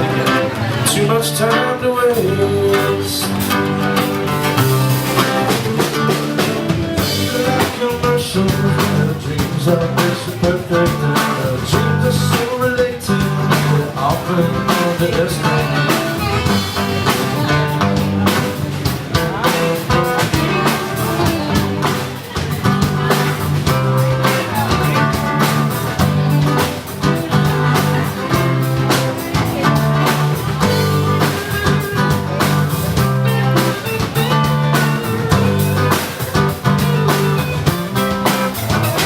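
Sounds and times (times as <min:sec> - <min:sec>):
steady drum beat: 0:00.0 - 0:01.4, 0:02.1 - 0:39.0
bass notes: 0:00.0 - 0:39.0
guitar: 0:00.0 - 0:39.0.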